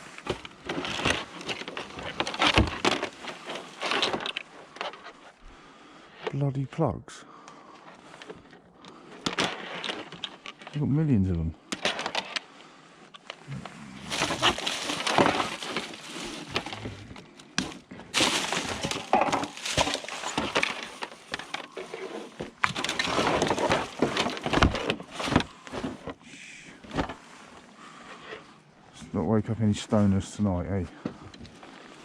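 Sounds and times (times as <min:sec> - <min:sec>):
junk cracking and clattering: 0:00.0 - 0:05.4, 0:07.8 - 0:10.8, 0:11.6 - 0:26.2.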